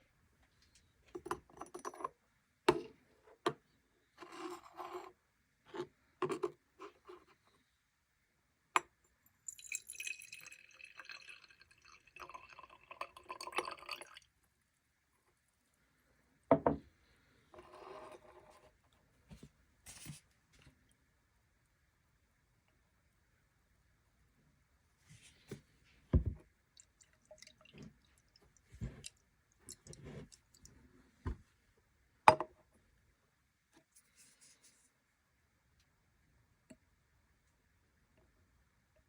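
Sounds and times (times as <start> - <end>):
liquid pouring: 9.4 - 14.4, 26.2 - 30.8
glass set down on hard surface: 16.5 - 16.8, 32.3 - 32.5
glass containers handled: 28.7 - 30.7.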